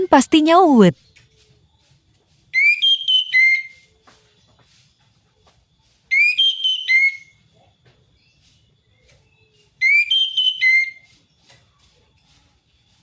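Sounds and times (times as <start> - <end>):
thrush singing whistled notes: 2.5 - 4.0, 6.0 - 7.4, 8.4 - 11.3.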